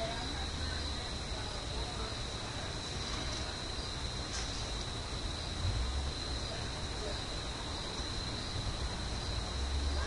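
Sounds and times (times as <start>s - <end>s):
background hiss: 0.0s - 10.0s
low rumble: 4.7s - 6.4s.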